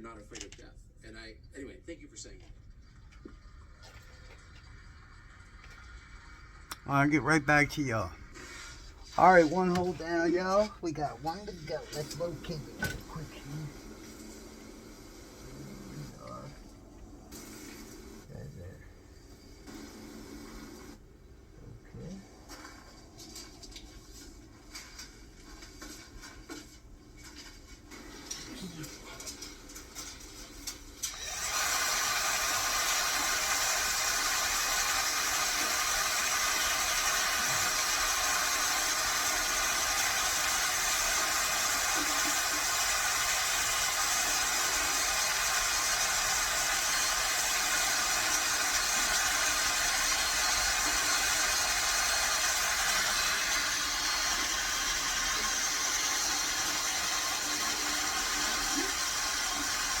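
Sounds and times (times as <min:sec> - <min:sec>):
electric drill whining: 0:31.0 - 1:00.0.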